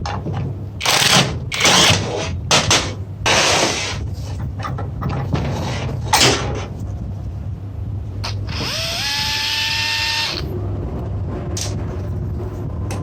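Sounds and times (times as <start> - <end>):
small electric motor whine: 8.4 - 10.4.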